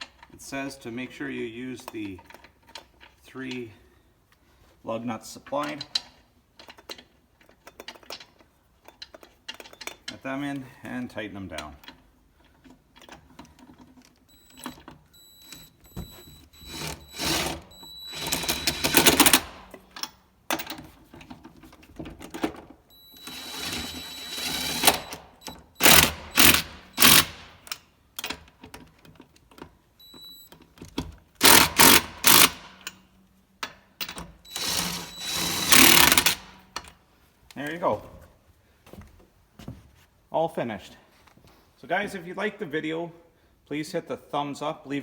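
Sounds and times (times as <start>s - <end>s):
impact driver hammering and whining: 14.3s - 19.9s, 22.9s - 27.7s, 31.4s - 33.0s, 34.0s - 36.8s.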